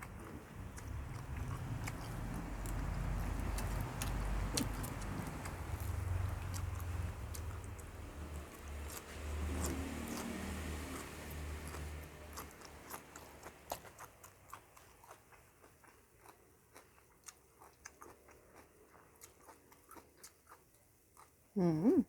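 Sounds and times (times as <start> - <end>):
chewing crisp raw vegetables: 0.0 - 22.0.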